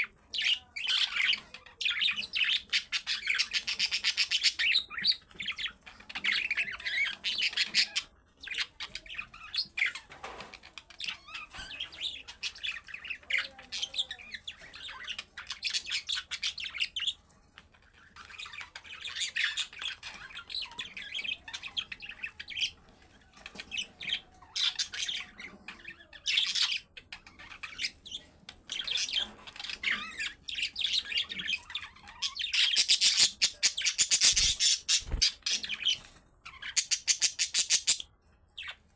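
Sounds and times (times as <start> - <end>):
budgerigars chattering: 23.6 - 38.0.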